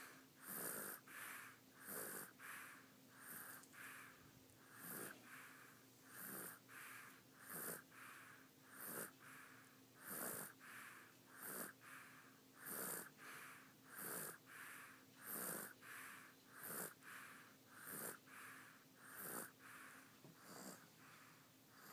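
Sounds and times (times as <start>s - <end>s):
baby snoring faintly: 0.0s - 21.9s.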